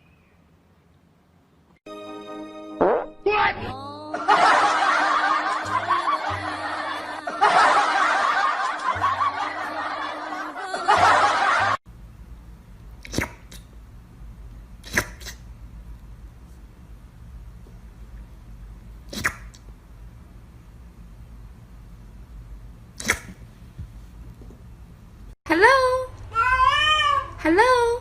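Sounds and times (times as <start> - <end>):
music: 1.9 - 10.3
people laughing: 4.1 - 11.8.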